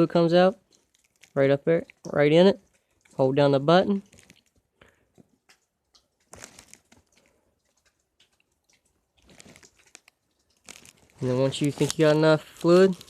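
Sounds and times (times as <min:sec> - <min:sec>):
soft rustles: 0:04.0 - 0:13.0.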